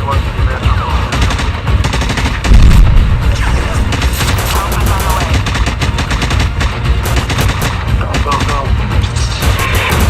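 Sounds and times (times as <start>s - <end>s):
airsoft guns firing bursts: 4.0s - 8.6s.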